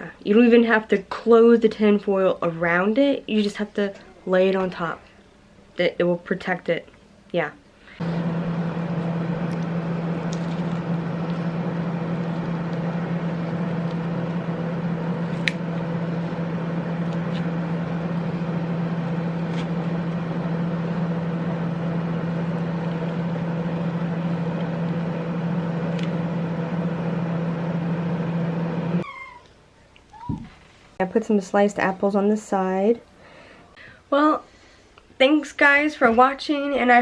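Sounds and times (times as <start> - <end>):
appliance motor hum: 8.0 - 29.0
even whirring: 8.0 - 29.0.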